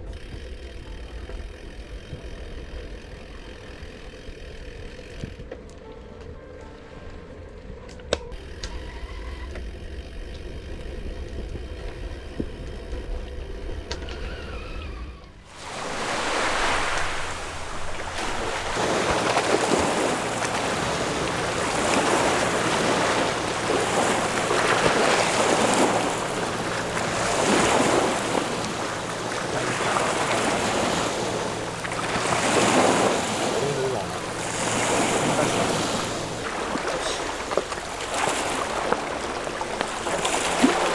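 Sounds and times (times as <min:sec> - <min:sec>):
sea waves washing on shore: 0:15.5 - 0:40.9.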